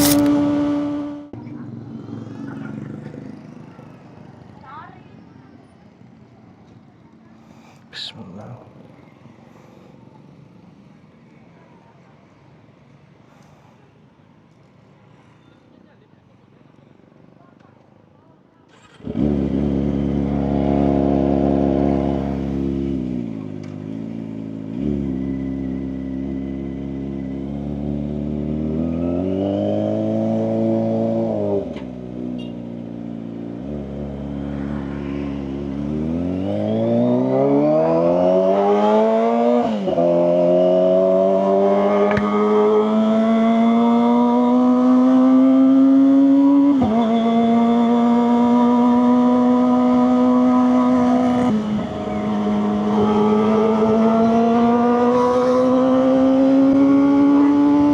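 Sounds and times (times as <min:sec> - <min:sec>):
motorcycle engine accelerating: 0:00.0 - 0:04.5, 0:18.8 - 0:57.9.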